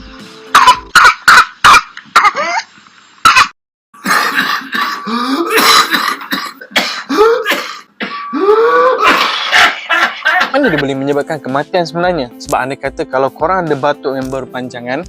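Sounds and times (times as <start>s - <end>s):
person coughing: 3.3s - 10.8s.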